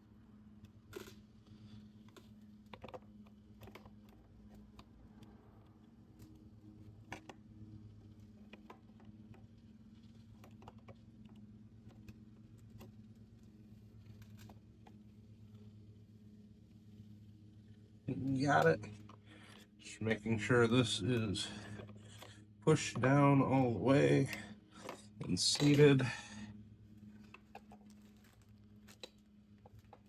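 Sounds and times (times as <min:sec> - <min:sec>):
low steady hum: 0:11.6 - 0:30.0.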